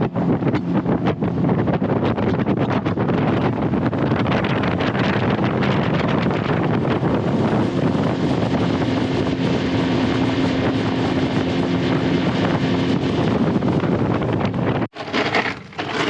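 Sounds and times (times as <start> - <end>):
wind buffeting microphone: 0.0 - 15.0
outboard motor running: 0.0 - 16.0.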